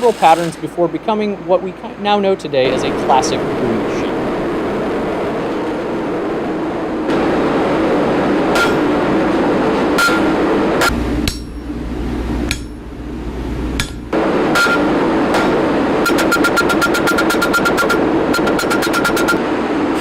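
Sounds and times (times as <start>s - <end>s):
steady background noise: 0.0s - 20.0s
hammer striking steel on anvil: 8.5s - 8.9s, 10.0s - 11.7s, 12.5s - 12.8s, 13.8s - 18.0s.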